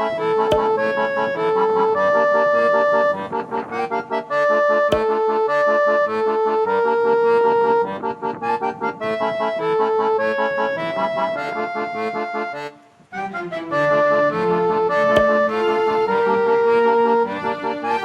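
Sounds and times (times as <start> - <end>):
sharp click: 0.0 - 1.7, 4.9 - 5.3, 15.0 - 16.3
background music: 0.0 - 18.0.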